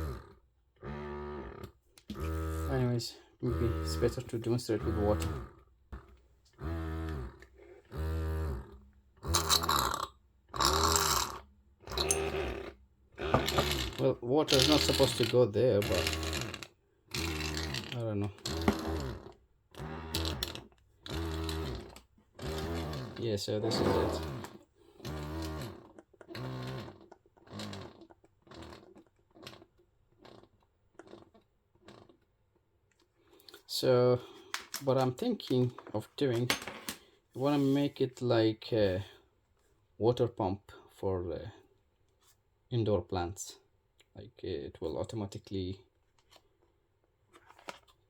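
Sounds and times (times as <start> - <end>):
breast pump motor cycling: 0.0 - 28.0.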